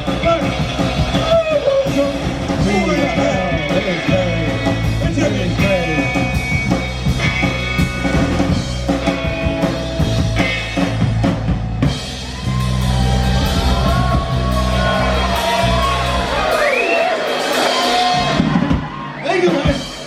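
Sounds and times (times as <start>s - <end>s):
bass guitar: 0.0s - 20.0s
drum beat: 0.0s - 20.0s.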